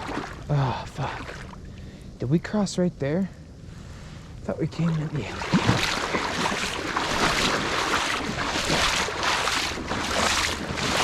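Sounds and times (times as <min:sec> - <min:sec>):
legs wading through river water: 0:00.0 - 0:01.9, 0:04.7 - 0:11.0.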